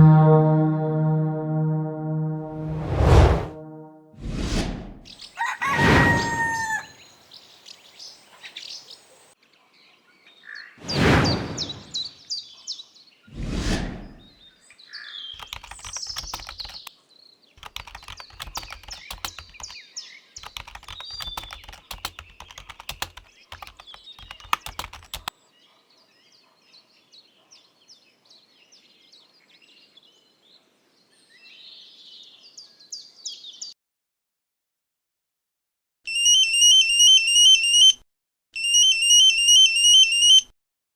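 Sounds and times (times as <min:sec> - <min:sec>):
birds chirping: 0:15.3 - 0:16.9, 0:17.6 - 0:19.8, 0:20.4 - 0:25.3
typing on computer keyboard: 0:15.4 - 0:16.9, 0:17.6 - 0:19.8, 0:20.4 - 0:25.3.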